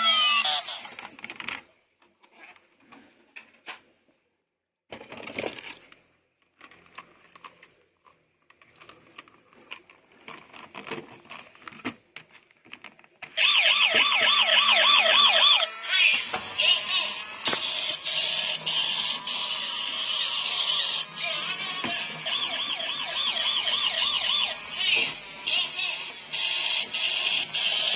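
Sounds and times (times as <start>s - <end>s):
toy siren wailing: 0.0s - 0.9s, 13.4s - 27.9s
plastic toys clicking and rustling: 0.8s - 1.7s, 4.9s - 14.1s.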